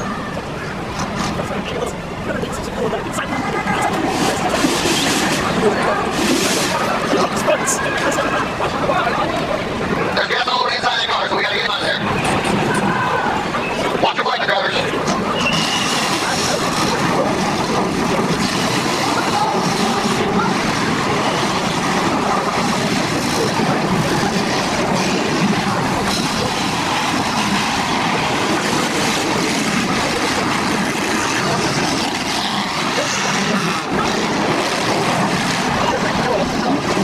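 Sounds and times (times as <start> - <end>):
car engines revving: 0.0 - 37.0
wind buffeting microphone: 14.8 - 37.0.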